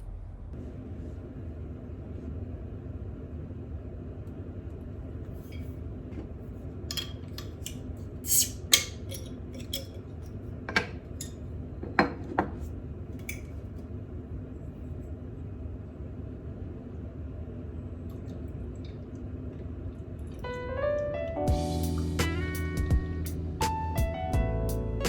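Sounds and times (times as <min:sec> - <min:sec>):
range hood fan humming: 0:00.0 - 0:25.0
dishes and utensils clinking: 0:06.9 - 0:13.5.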